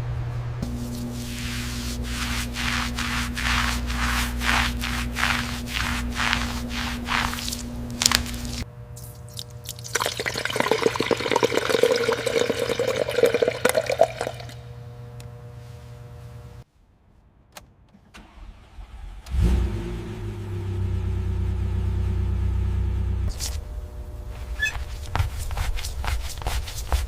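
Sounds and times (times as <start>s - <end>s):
steady hum: 0.0s - 16.7s, 21.4s - 27.0s
car engine starting and idling: 17.5s - 23.3s.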